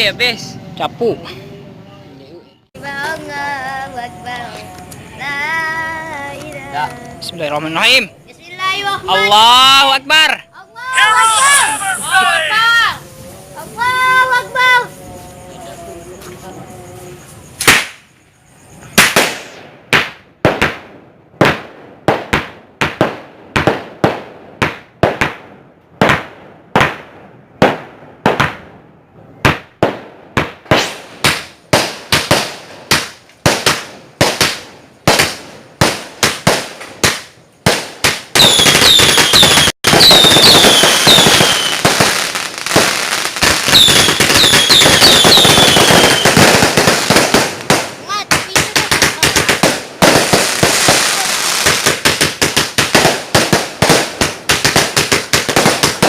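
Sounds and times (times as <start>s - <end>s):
firework crackling: 2.8s - 15.3s, 17.1s - 28.7s, 29.4s - 56.0s
firework bangs: 17.5s - 18.2s, 18.8s - 56.0s.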